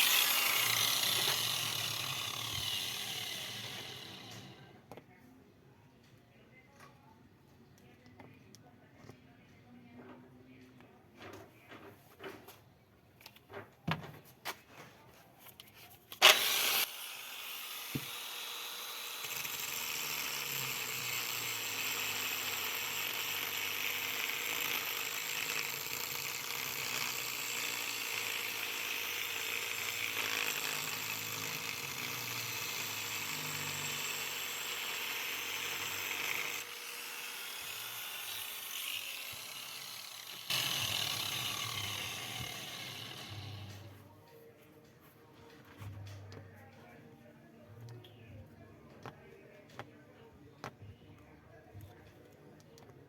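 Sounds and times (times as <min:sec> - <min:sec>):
angle grinder grinding stone: 0:00.0 - 0:04.8, 0:16.1 - 0:44.0.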